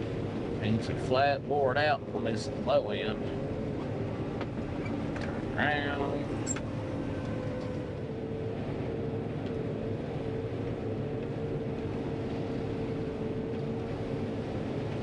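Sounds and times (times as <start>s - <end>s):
combine harvester engine drone: 0.0s - 15.0s.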